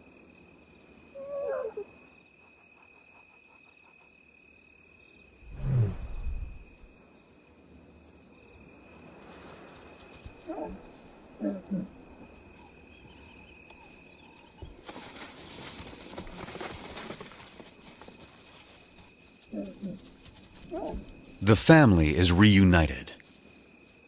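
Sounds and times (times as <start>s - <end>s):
insects chirring: 0.0s - 24.0s
rustling: 14.6s - 21.4s.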